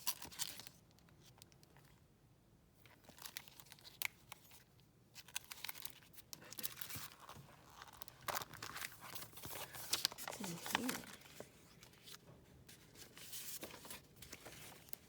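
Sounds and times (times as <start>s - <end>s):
packaging crinkling and tearing: 0.0s - 1.3s, 3.0s - 12.2s.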